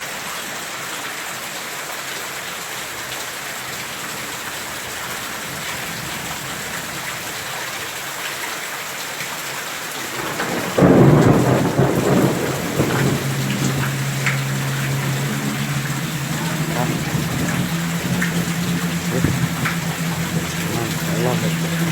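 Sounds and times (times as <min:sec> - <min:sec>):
steady rain falling: 0:00.0 - 0:21.9
thunder crack and rumble: 0:10.0 - 0:21.9
steady low drone: 0:10.8 - 0:21.9.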